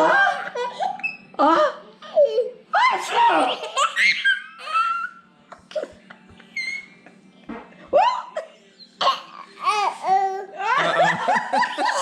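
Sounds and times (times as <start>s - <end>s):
baby laughing: 3.4s - 5.9s.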